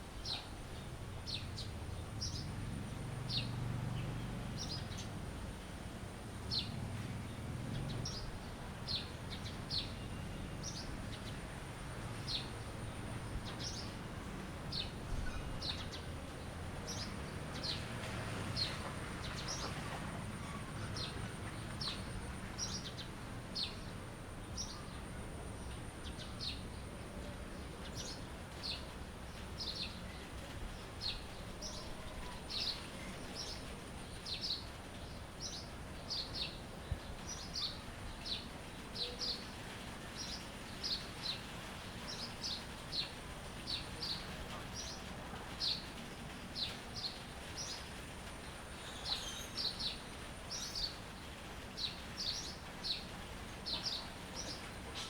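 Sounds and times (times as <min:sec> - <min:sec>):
songbird chirping: 0:00.2 - 0:05.3, 0:06.4 - 0:55.0.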